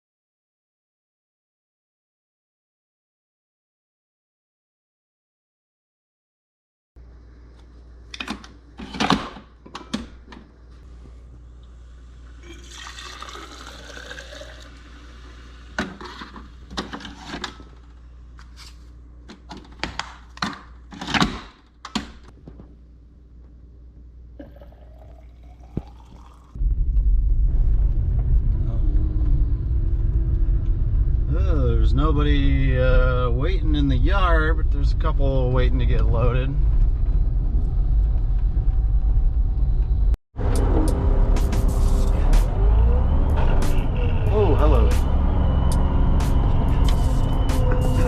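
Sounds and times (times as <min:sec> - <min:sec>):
low hum: 0:22.5 - 0:48.0
diesel truck engine rumble: 0:26.7 - 0:48.0.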